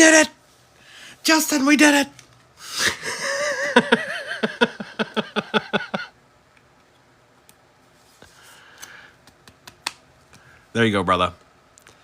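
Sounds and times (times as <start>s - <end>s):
person laughing: 2.7s - 6.2s.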